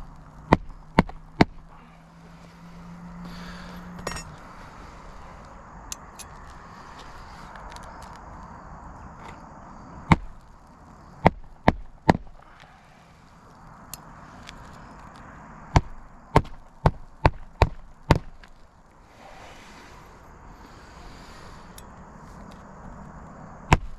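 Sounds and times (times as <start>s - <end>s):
hatchet hammering roofing nails: 0.5s - 1.7s, 10.1s - 10.4s, 11.2s - 12.4s, 15.7s - 18.5s, 23.7s - 23.9s.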